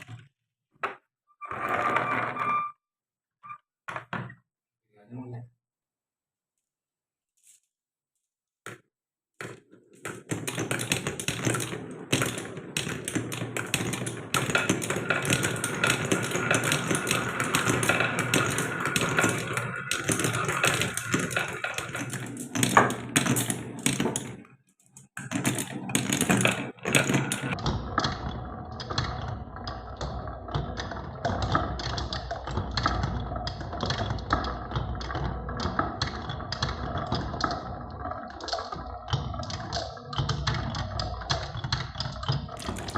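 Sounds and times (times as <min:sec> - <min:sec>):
marbles rattling down wooden tracks: 0:10.0 - 0:42.9.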